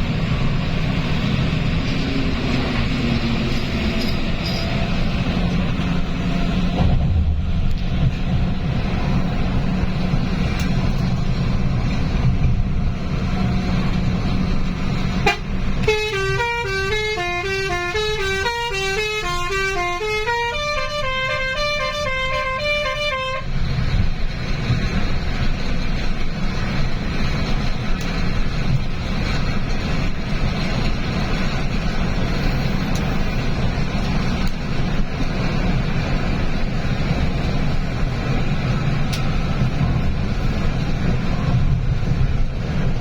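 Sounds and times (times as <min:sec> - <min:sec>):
bus engine rumble: 0:00.0 - 0:43.0
tyres on road: 0:00.0 - 0:43.0
musical air horns playing tune: 0:15.2 - 0:23.5.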